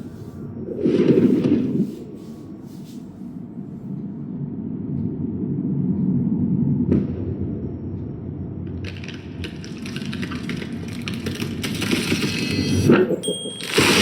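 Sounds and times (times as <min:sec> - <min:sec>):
low rumbling sound effect: 0:03.8 - 0:08.8.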